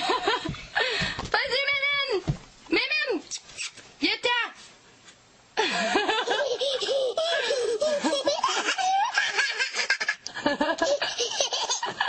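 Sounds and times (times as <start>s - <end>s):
high-pitched hearty laughter: 5.6s - 12.0s.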